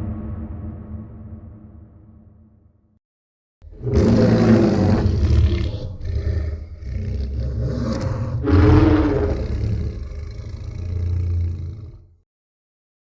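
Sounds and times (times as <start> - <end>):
monster roar: 3.7 - 12.2.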